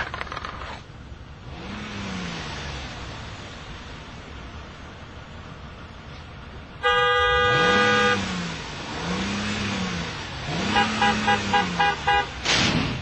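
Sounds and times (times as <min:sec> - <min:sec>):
car horn blast: 0:06.8 - 0:08.3, 0:10.6 - 0:12.4.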